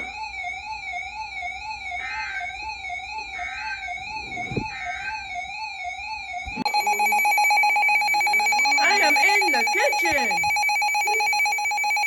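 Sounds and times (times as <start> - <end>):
warbling electronic tone: 6.6 - 12.0
faint pulsing chirps: 6.7 - 12.0.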